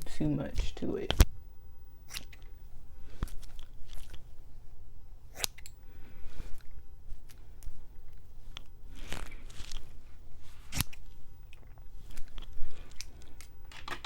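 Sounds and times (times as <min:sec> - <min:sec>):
scissors snipping hair: 0:02.1 - 0:02.5, 0:05.3 - 0:05.8, 0:10.7 - 0:11.1.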